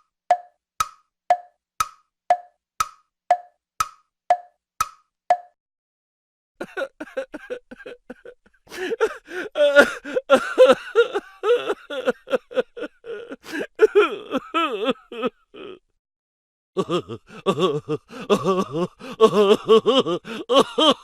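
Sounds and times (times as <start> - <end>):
person laughing: 6.6 - 15.9, 16.8 - 21.0.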